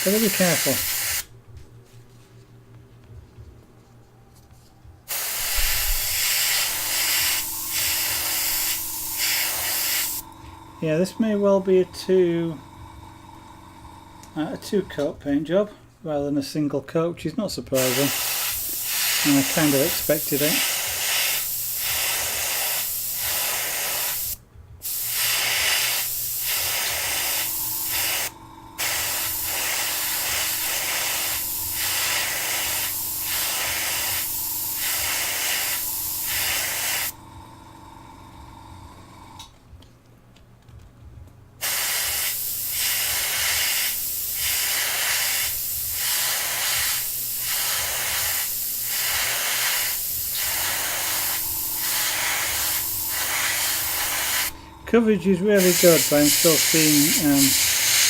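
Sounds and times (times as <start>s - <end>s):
paint spraying hiss: 0.0s - 1.3s, 5.1s - 12.9s, 17.8s - 37.2s, 41.6s - 58.0s
steady low hum: 0.0s - 58.0s.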